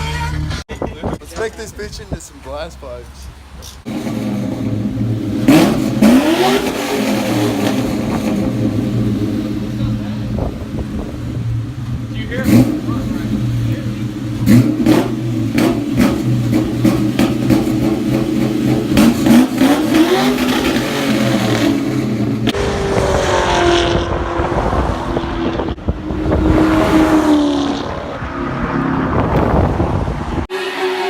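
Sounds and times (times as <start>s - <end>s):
car engine revving: 3.5s - 31.0s.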